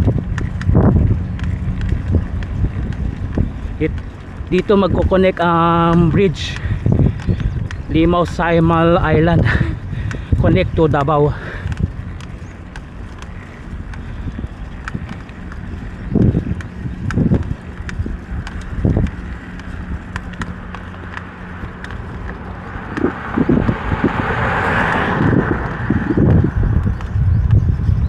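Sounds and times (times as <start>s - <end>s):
vehicle hum: 0.0s - 28.0s
heavy rumbling thumps: 9.1s - 28.0s
wind rushing: 13.7s - 28.0s.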